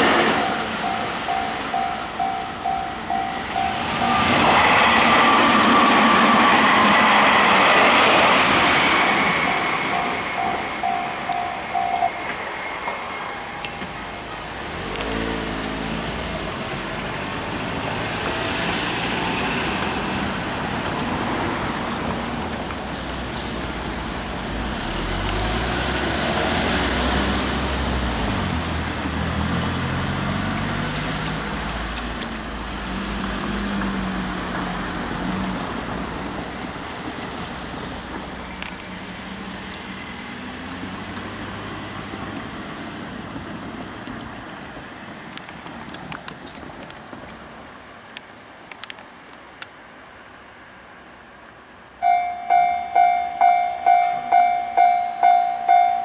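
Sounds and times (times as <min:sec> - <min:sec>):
level crossing warning bell: 0:00.0 - 0:07.5, 0:09.1 - 0:14.7, 0:52.0 - 0:56.0
train passing: 0:00.0 - 0:46.8, 0:52.0 - 0:56.0
road traffic: 0:00.0 - 0:56.0
vehicle engine pulling away: 0:14.6 - 0:19.1, 0:24.5 - 0:35.6, 0:39.2 - 0:43.0.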